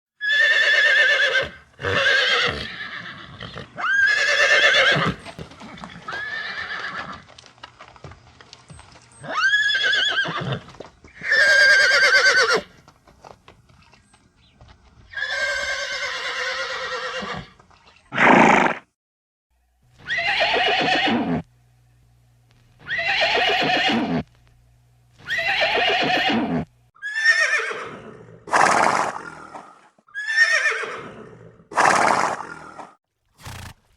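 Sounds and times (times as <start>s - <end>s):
horse neighing: 0.2s - 7.3s, 9.2s - 12.7s, 15.1s - 18.8s, 20.0s - 21.5s, 22.8s - 24.2s, 25.2s - 33.8s.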